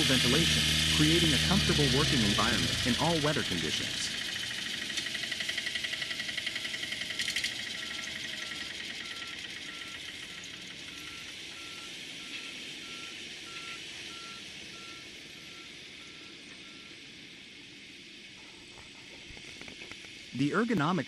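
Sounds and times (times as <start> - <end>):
reversing alarm beeping: 0.0 - 4.2, 7.2 - 17.2
fast rattle: 0.0 - 11.4, 18.4 - 21.0
heavy machinery running: 0.0 - 21.0.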